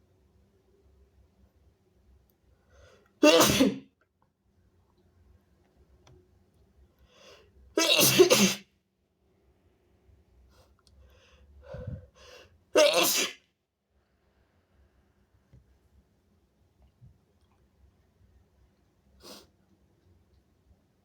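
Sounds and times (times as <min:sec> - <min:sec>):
person sneezing: 0:03.2 - 0:03.8, 0:07.8 - 0:08.7, 0:12.8 - 0:13.4.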